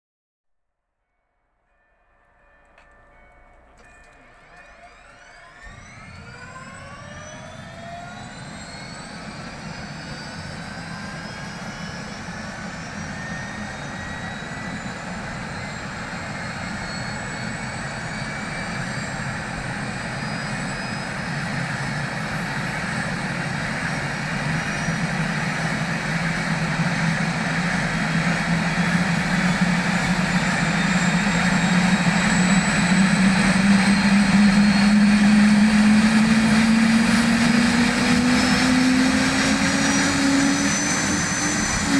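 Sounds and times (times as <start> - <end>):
helicopter turbine spooling up: 4.5 - 41.9.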